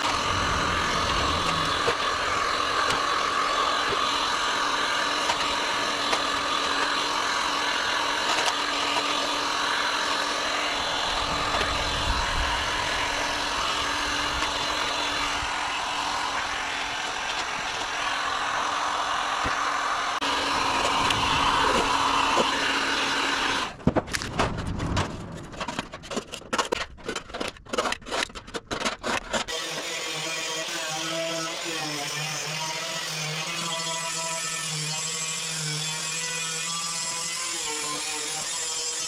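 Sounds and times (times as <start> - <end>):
hot air gun blowing: 0.0 - 23.8.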